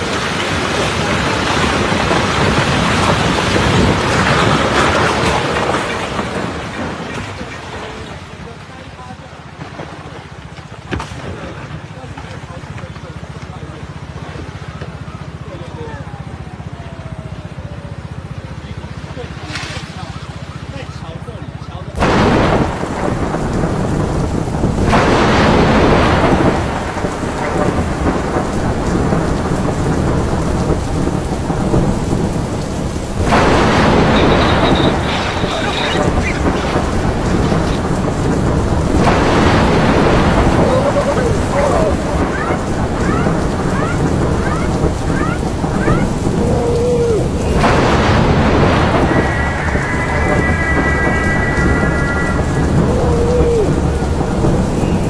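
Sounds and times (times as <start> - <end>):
heavy rain: 0.0 - 20.7, 21.9 - 55.0
deep continuous rumble: 21.8 - 55.0
sudden burst of noise: 22.0 - 55.0.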